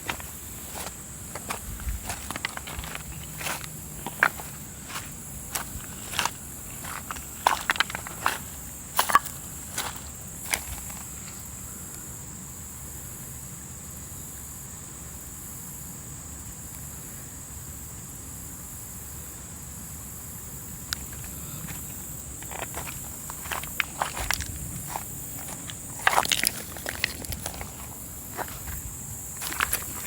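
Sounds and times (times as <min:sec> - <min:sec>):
footsteps on stony ground: 0:00.0 - 0:11.5, 0:21.0 - 0:30.0.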